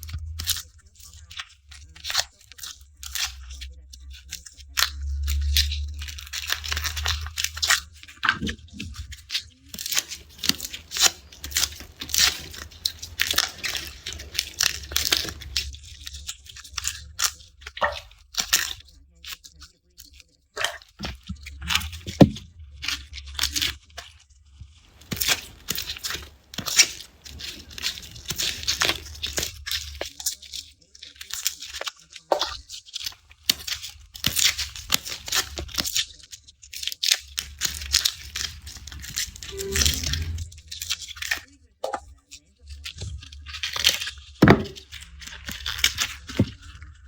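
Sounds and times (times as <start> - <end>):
garlic skins crackling and tearing: 6.0 - 7.8, 9.7 - 15.8, 24.9 - 30.3, 33.0 - 36.1, 36.7 - 40.2, 43.6 - 46.7
low handling thump: 44.4 - 44.8.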